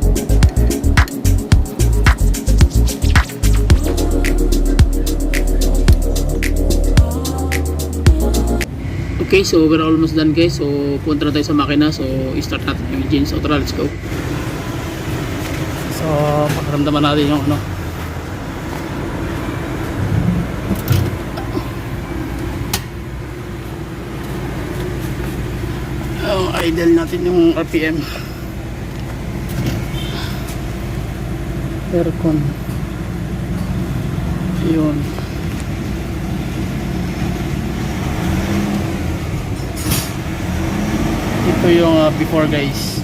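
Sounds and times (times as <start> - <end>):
car engine idling: 0.0 - 8.7, 10.8 - 43.0
pickup truck engine idling: 20.5 - 37.9.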